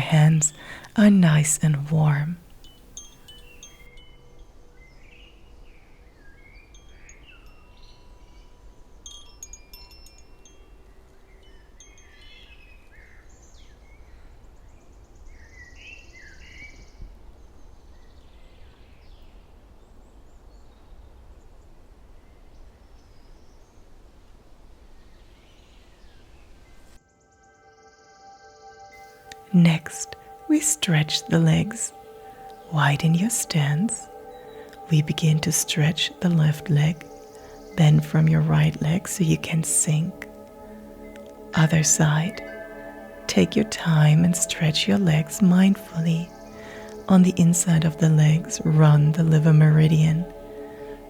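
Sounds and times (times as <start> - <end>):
faint chime-like ringing: 0.0 - 5.7, 6.4 - 13.4
low background rumble: 29.3 - 51.0.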